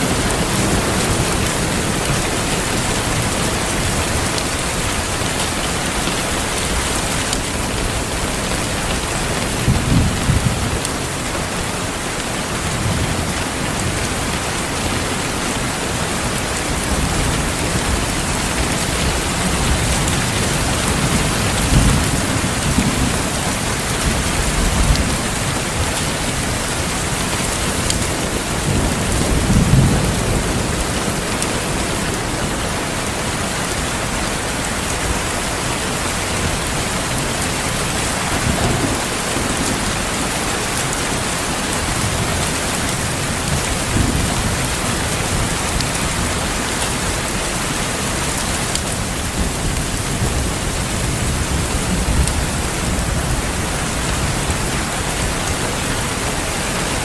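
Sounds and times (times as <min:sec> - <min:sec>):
steady rain falling: 0:00.0 - 0:57.0
rolling thunder: 0:16.4 - 0:33.8, 0:36.4 - 0:46.4.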